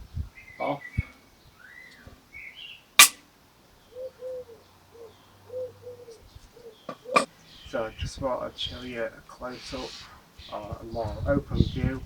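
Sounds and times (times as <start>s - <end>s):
magnet snapping onto metal: 3.0s - 3.2s
bird chirps: 3.8s - 8.1s.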